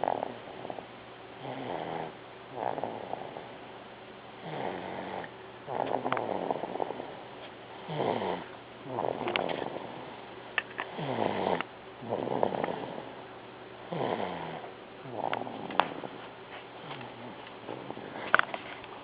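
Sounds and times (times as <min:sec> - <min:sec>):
baby snoring: 0:00.0 - 0:03.6, 0:04.4 - 0:07.2, 0:07.8 - 0:10.2, 0:10.9 - 0:13.2, 0:13.9 - 0:16.2.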